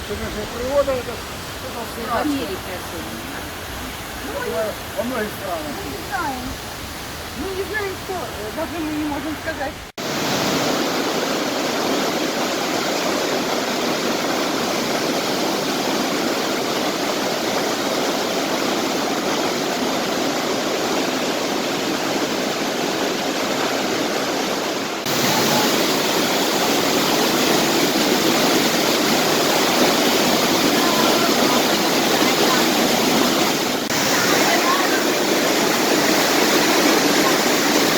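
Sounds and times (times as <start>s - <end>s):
waterfall rushing: 0.0s - 37.9s.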